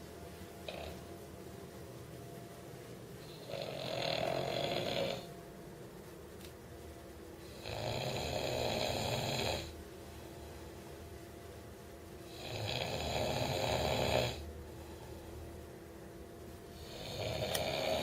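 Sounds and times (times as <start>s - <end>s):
person snoring: 3.2s - 5.3s, 7.4s - 9.7s, 12.3s - 14.5s, 16.8s - 18.0s.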